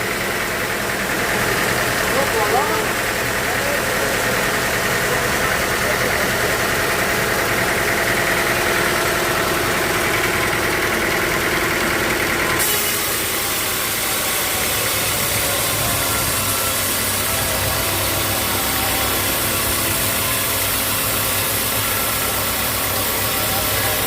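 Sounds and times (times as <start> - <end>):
sawmill machinery humming: 0.0 - 24.0.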